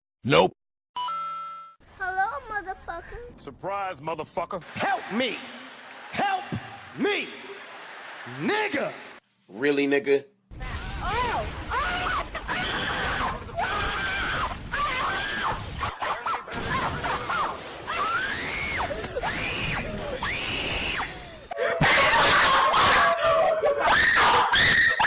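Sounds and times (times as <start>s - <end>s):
harsh screaming: 10.6s - 25.0s.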